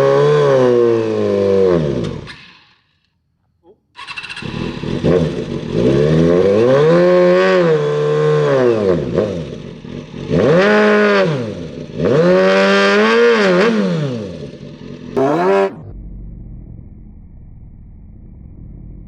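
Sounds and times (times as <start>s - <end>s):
motorcycle engine revving: 4.0s - 15.9s.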